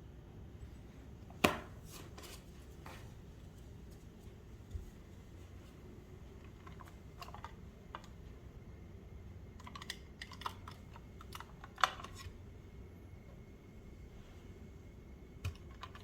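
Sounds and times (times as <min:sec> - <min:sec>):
low room hum: 0:00.0 - 0:16.0.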